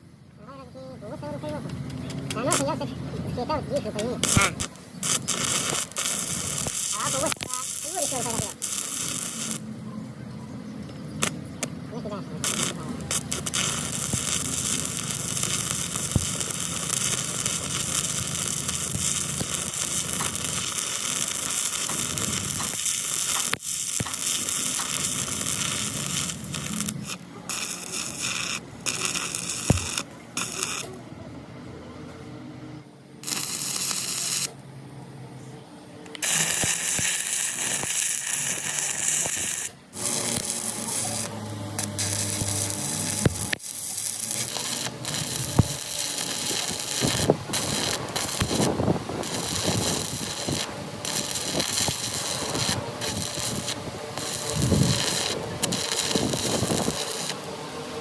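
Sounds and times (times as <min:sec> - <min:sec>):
power tool whirring: 0:12.4 - 0:31.0, 0:36.1 - 0:58.0.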